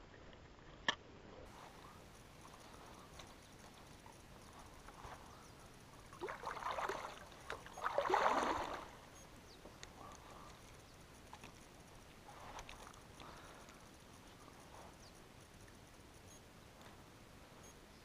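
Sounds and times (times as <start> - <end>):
water splashing: 5.9 - 9.1.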